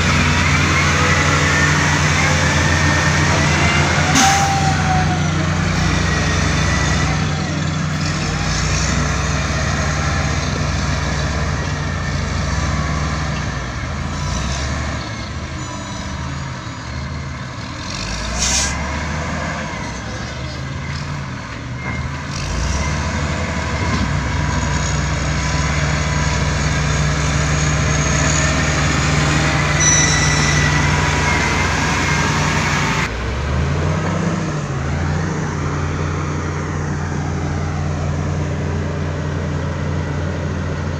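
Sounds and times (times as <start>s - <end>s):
heavy diesel engines working: 0.0s - 40.9s
thin high squeals: 0.3s - 7.8s, 27.9s - 32.8s.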